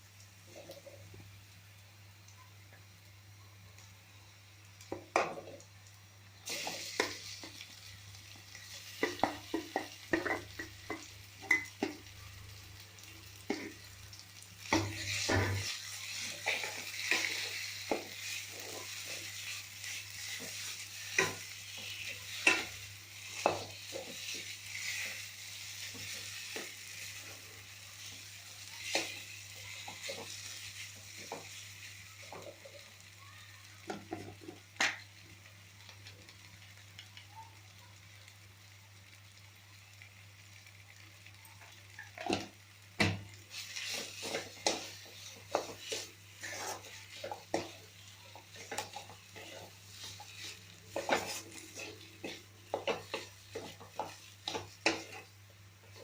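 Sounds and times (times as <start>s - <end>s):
food sizzling in oil: 0.0s - 56.0s
spatula scraping a pan: 14.6s - 27.4s, 43.5s - 56.0s.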